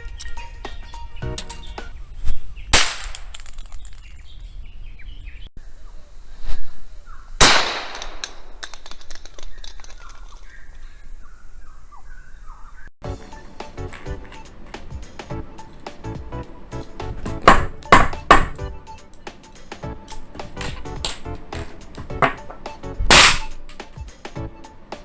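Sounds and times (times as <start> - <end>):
birds chirping faintly: 0.0 - 7.4, 9.2 - 25.0
sharp bang of cap grenade: 2.8 - 3.6, 20.1 - 24.3.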